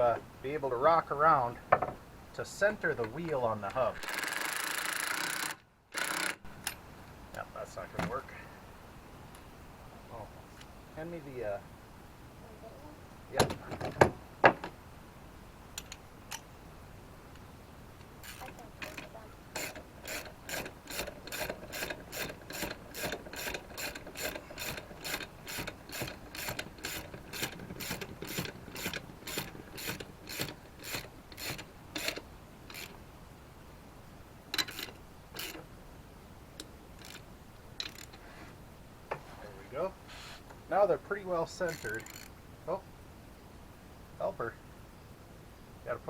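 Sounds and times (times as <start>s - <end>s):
ratchet wrench clicking: 4.0s - 6.7s, 18.2s - 33.0s, 34.6s - 35.6s, 37.0s - 37.2s, 37.8s - 38.2s, 41.7s - 42.3s.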